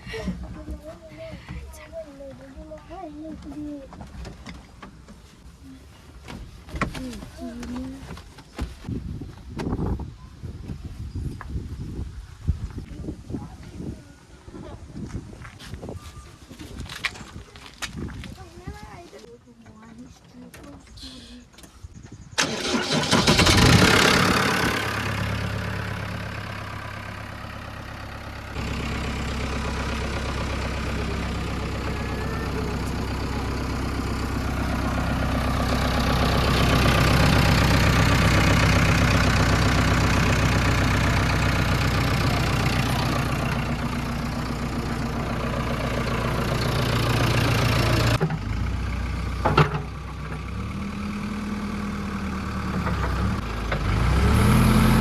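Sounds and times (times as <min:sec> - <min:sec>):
heavy diesel engine running: 0:22.4 - 0:55.0.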